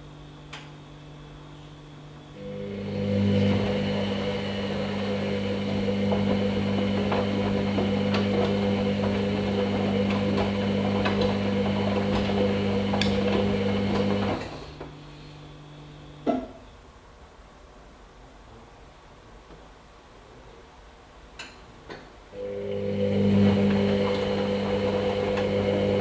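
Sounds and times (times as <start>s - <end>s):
washing machine humming: 0.0s - 16.9s, 22.3s - 26.0s.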